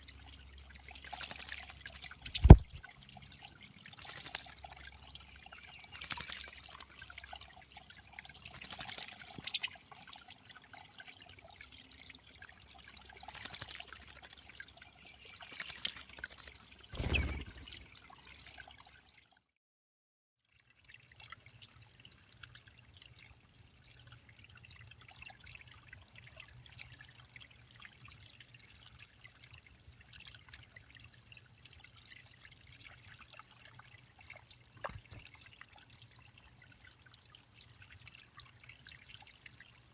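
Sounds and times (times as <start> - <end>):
water trickling in a pond: 0.0 - 19.6, 20.4 - 39.9.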